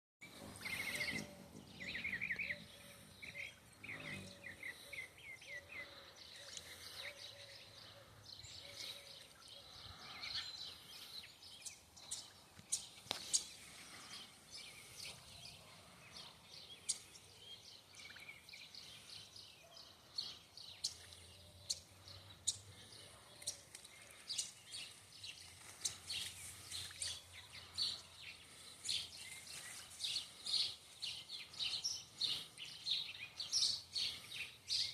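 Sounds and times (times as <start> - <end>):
bird trill: 0.2 - 10.6
small birds chirping: 0.2 - 34.9.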